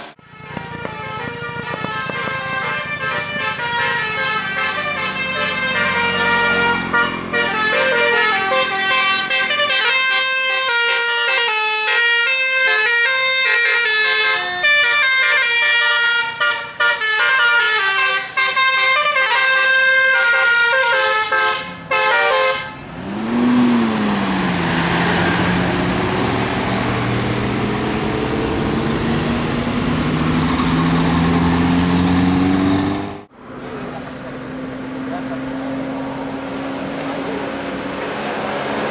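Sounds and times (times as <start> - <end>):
vehicle engine running: 0.4 - 9.5, 21.5 - 33.3
musical horn playing a melody: 0.4 - 22.8.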